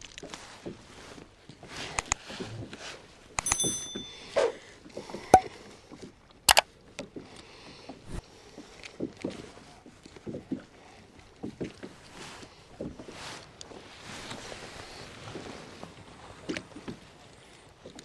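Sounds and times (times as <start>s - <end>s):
fishing tackle clicks and knocks: 2.0s - 2.2s, 3.4s - 3.9s
sharp clicks: 2.0s - 2.2s
short metallic ring: 3.4s - 4.6s.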